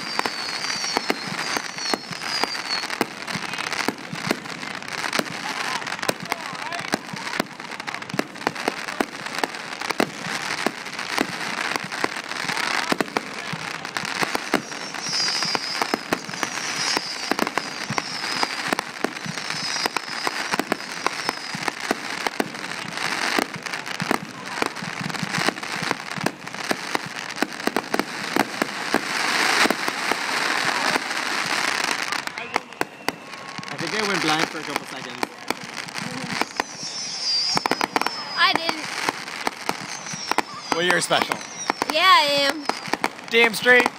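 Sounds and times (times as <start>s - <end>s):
high falling whistles: 0.0s - 3.0s, 14.6s - 18.6s, 19.2s - 21.7s, 36.3s - 42.9s
fireworks bangs: 0.0s - 43.9s
fireworks crackling: 0.0s - 43.9s.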